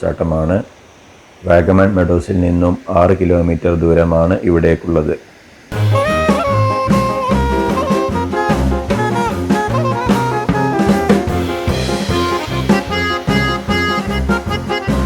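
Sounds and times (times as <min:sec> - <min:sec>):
drum kit beat: 0:05.7 - 0:15.0
saxophone melody: 0:05.7 - 0:15.0
upbeat jazz music: 0:05.7 - 0:15.0.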